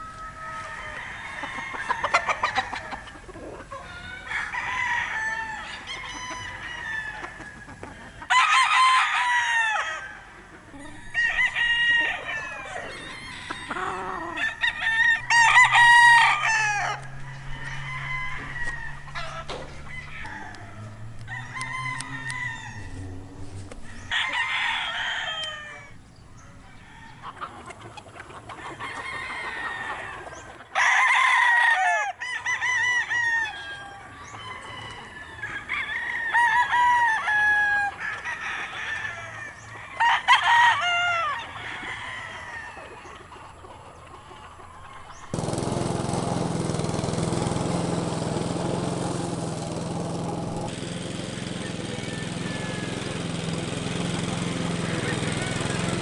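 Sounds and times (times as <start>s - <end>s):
roosters crowing: 0.0s - 56.0s
chicken clucking: 0.5s - 4.4s, 5.6s - 8.3s, 10.2s - 14.8s, 25.4s - 30.8s, 41.3s - 45.4s.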